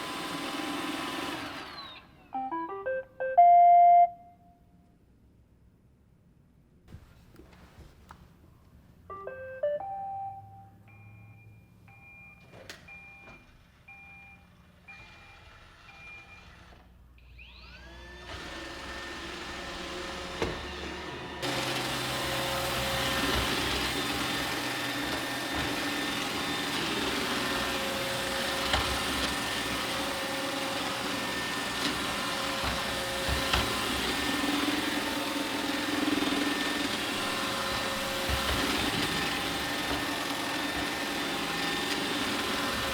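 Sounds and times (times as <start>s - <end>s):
robot vacuum motor whirring: 0.0s - 2.2s, 14.8s - 42.9s.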